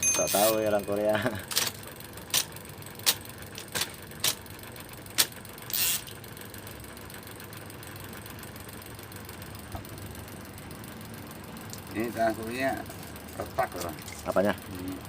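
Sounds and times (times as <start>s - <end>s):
typewriter motor running: 0.0s - 15.0s
typewriter clicks: 1.5s - 4.5s, 5.1s - 5.8s.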